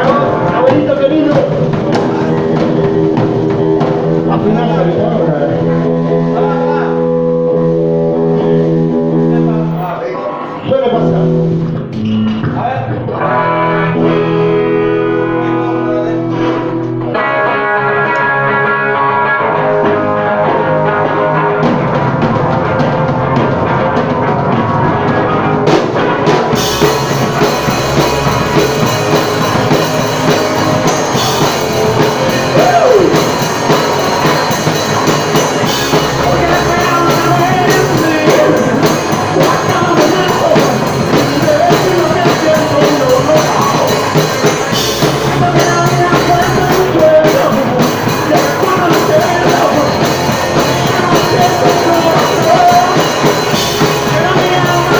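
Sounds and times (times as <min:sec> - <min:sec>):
drums with cymbals: 0:00.0 - 0:09.5, 0:20.7 - 0:54.9
electric guitar chords: 0:00.0 - 0:54.9
rock band playing: 0:00.0 - 0:54.9.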